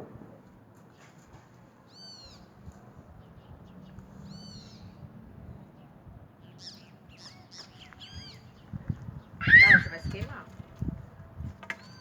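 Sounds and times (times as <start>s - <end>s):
high-pitched animal calls: 9.4s - 10.0s.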